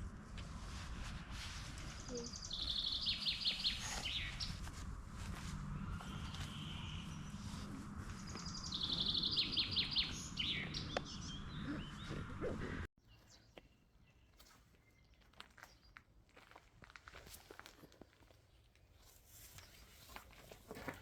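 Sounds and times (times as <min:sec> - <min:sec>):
low wind rumble: 0:00.0 - 0:12.9
wild birds singing: 0:01.9 - 0:04.9, 0:05.5 - 0:16.0.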